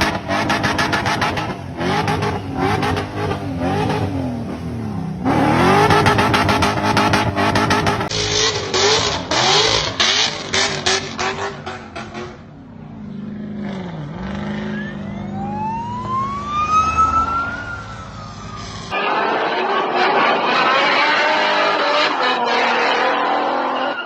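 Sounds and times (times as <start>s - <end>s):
car engine revving: 0.0s - 24.0s
siren wailing: 14.1s - 24.0s.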